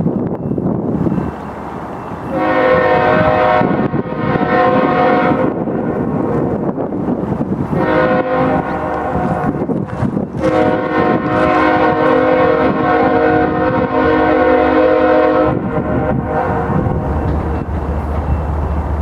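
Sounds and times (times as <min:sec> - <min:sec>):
passing train rumble: 0:00.0 - 0:19.0
train air horn blasts: 0:02.3 - 0:06.4, 0:07.7 - 0:09.7, 0:10.4 - 0:17.6.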